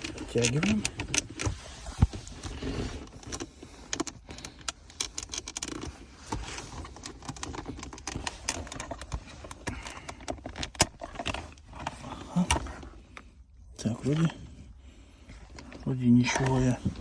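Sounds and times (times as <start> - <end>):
plastic trim clicking and rattling: 0.0 - 1.6, 3.1 - 11.6.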